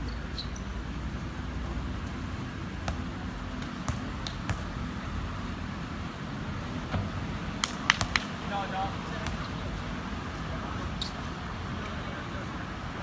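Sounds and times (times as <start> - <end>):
steady background noise: 0.0 - 13.0
basketball bouncing on court: 2.8 - 4.8, 7.9 - 8.2, 9.2 - 9.5.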